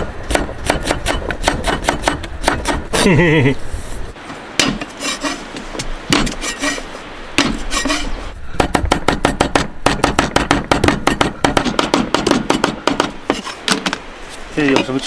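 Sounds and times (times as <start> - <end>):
knife chopping on wooden board: 7.4 - 8.0.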